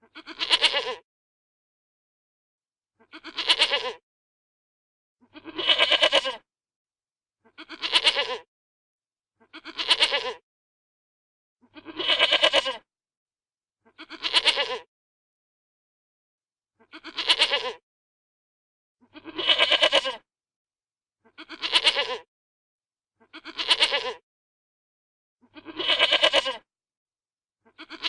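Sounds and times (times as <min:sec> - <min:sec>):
goat bleating: 0:00.0 - 0:01.0, 0:03.0 - 0:04.0, 0:05.2 - 0:06.4, 0:07.5 - 0:08.5, 0:09.4 - 0:10.4, 0:11.7 - 0:12.9, 0:13.9 - 0:14.9, 0:16.8 - 0:17.8, 0:19.1 - 0:20.2, 0:21.3 - 0:22.3, 0:23.2 - 0:24.2, 0:25.5 - 0:26.7, 0:27.7 - 0:28.0.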